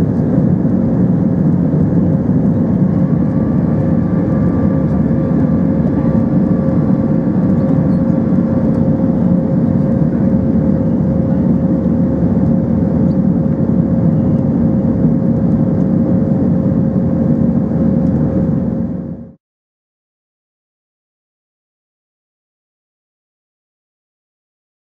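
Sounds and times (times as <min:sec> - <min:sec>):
airliner cabin engine and airflow noise: 0:00.0 - 0:19.4
constant hum: 0:00.0 - 0:19.4.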